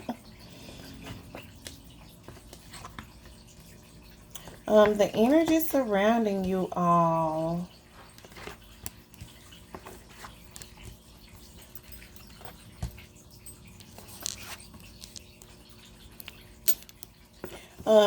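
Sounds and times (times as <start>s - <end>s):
cards clicking and rustling: 13.8s - 15.6s.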